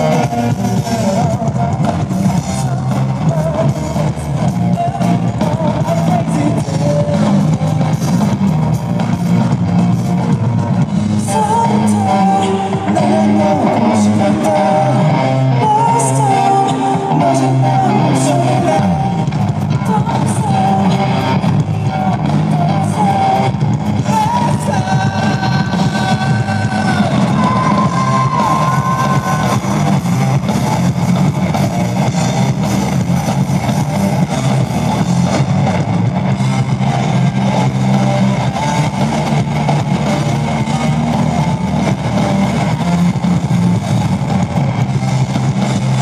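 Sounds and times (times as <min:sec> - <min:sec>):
person singing: 0:00.0 - 0:08.4, 0:11.1 - 0:30.4
drums: 0:00.0 - 0:46.0
electric guitars: 0:00.0 - 0:46.0.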